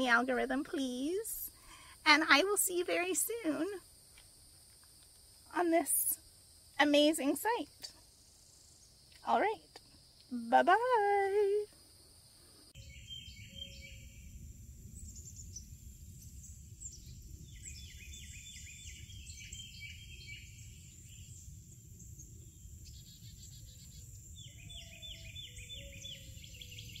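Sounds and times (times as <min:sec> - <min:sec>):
high insect drone: 0:00.0 - 0:27.0
birds chirping: 0:12.8 - 0:14.4, 0:15.0 - 0:27.0.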